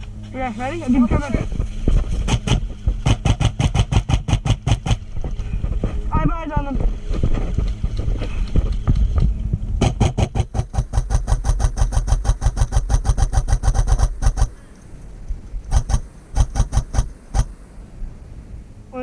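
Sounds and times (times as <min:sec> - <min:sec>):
airsoft gun firing full auto: 0:09.8 - 0:14.5, 0:15.7 - 0:17.5.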